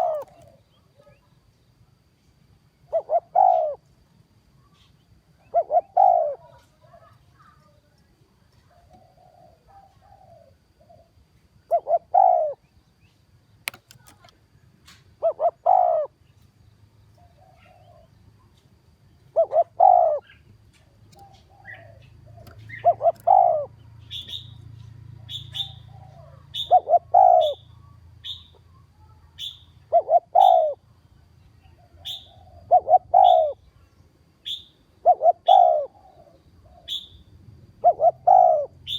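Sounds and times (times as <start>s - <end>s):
dove cooing: 0.0s - 1.3s, 2.8s - 4.0s, 4.6s - 7.8s, 8.6s - 12.8s, 15.2s - 16.2s, 17.2s - 18.5s, 19.3s - 30.9s, 31.6s - 33.7s, 34.4s - 38.9s
high bird chirp: 21.1s - 28.6s, 29.2s - 30.8s, 31.7s - 33.8s, 34.4s - 35.8s, 36.8s - 37.3s, 37.9s - 38.9s.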